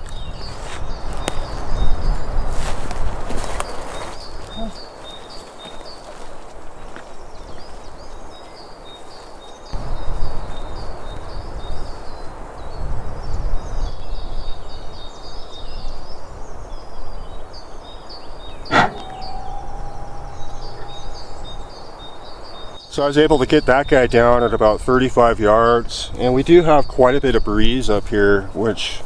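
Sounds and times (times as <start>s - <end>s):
birds chirping: 14.0s - 22.8s
faint steady hum: 18.5s - 22.8s.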